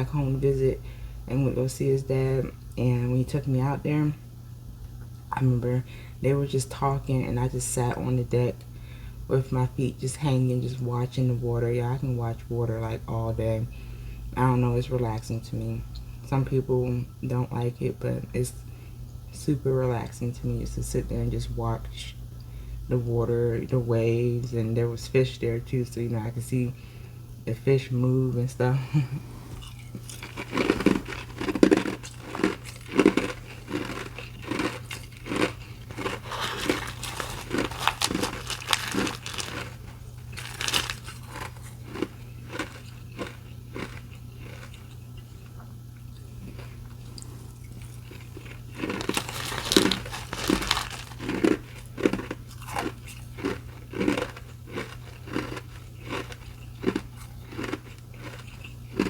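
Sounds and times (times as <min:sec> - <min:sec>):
steady low hum: 0:00.0 - 0:59.0
ice being chewed: 0:29.5 - 0:59.0.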